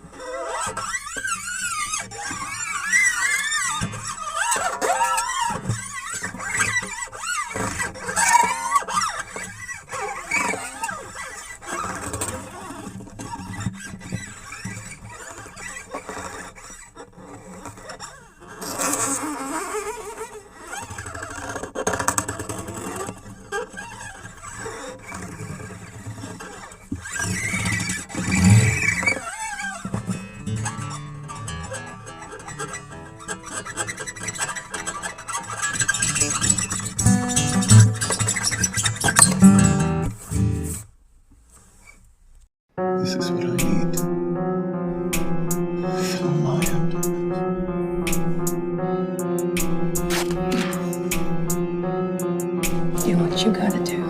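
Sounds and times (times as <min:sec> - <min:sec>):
experimental music with gliding tones: 0:36.2 - 0:40.0, 0:42.8 - 0:54.0.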